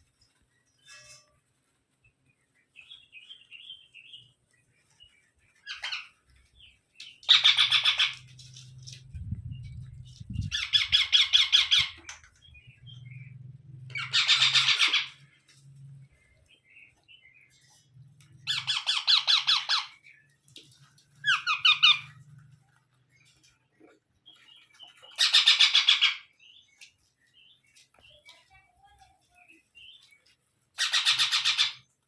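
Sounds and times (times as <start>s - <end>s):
parakeets chirping and squawking: 5.6s - 20.1s, 20.8s - 22.6s, 23.2s - 26.4s, 30.8s - 32.0s.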